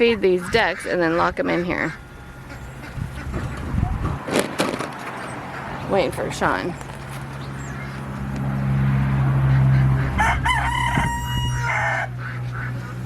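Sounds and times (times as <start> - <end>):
low steady hum: 0.0 - 4.2
rooster crowing: 10.0 - 12.3.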